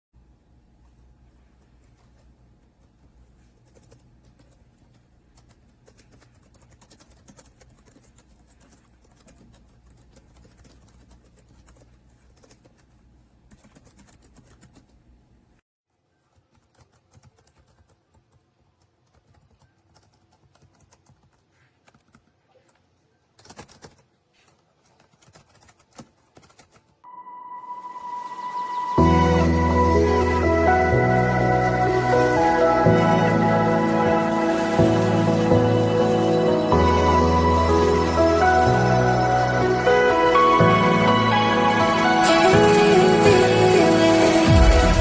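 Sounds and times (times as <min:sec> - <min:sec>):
keyboard typing clicks: 0:23.4 - 0:24.0, 0:25.0 - 0:26.9.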